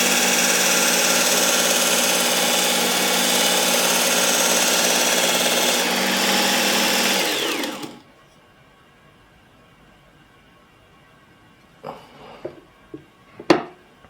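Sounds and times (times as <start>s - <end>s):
belt sharpener motor hum: 0.0s - 8.0s
motor spinning down: 0.0s - 8.0s.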